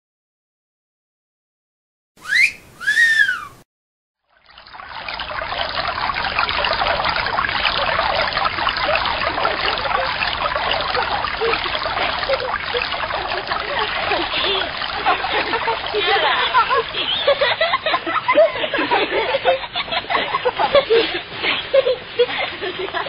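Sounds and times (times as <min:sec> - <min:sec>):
wolf whistle: 0:02.2 - 0:03.6.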